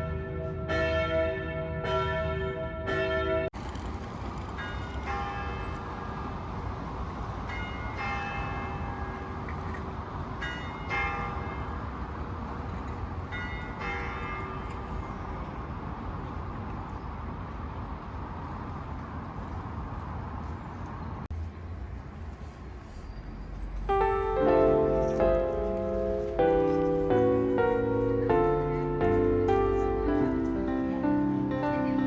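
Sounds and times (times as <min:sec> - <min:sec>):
church bells ringing: 0:00.0 - 0:03.6, 0:04.6 - 0:06.3, 0:07.5 - 0:09.5, 0:10.4 - 0:11.8, 0:13.2 - 0:15.4, 0:23.9 - 0:32.0.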